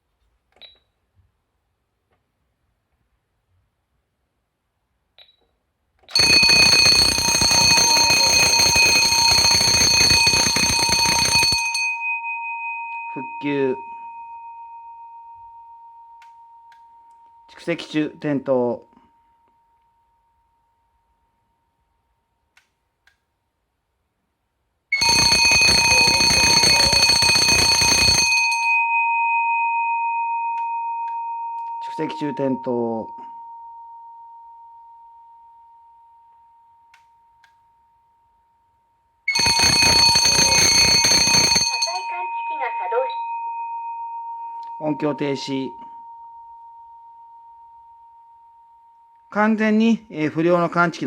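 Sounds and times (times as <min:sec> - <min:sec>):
fire alarm bell ringing: 0:06.1 - 0:17.6, 0:24.9 - 0:38.4, 0:39.3 - 0:49.4.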